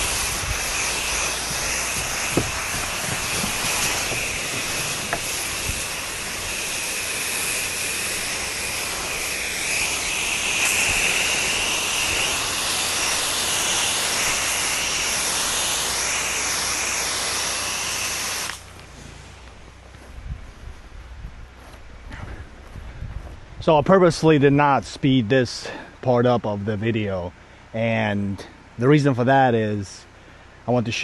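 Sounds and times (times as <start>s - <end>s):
pressure washer spraying: 0.0s - 18.8s.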